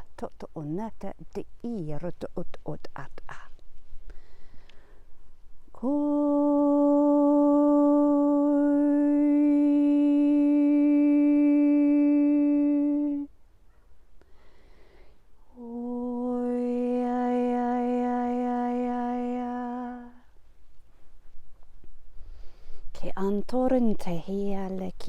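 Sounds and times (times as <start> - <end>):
woman breathing: 4.0 - 5.2, 14.2 - 15.5, 22.1 - 23.0.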